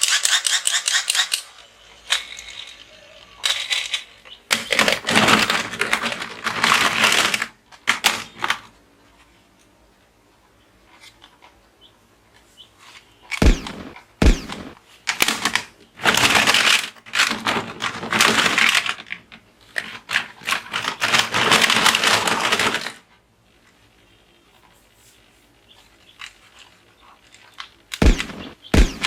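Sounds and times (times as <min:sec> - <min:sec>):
sharp knocks: 0:13.4 - 0:14.8, 0:28.0 - 0:29.0.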